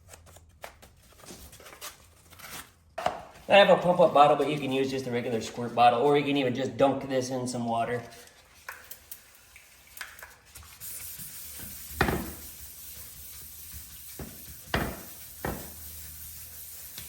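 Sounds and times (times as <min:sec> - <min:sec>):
wet sandpaper sanding: 0:10.6 - 0:17.0.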